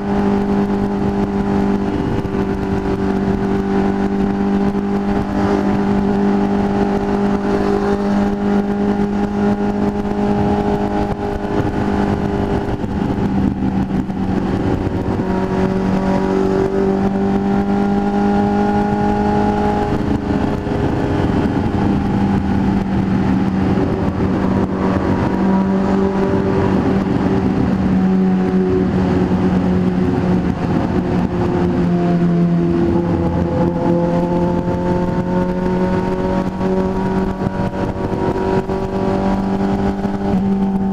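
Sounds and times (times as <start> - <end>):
motorcycle engine running: 0.0 - 40.9
wind and road rush: 0.0 - 40.9.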